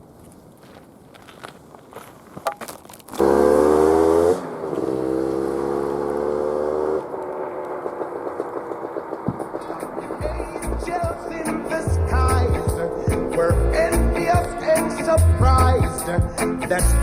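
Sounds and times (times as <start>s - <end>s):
two-stroke motorcycle engine running: 3.2s - 16.4s.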